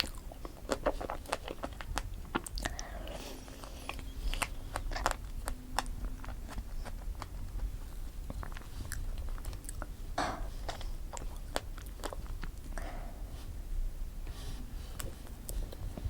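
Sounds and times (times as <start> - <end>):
close-miked chewing cake: 0.0 - 13.7, 14.6 - 16.0.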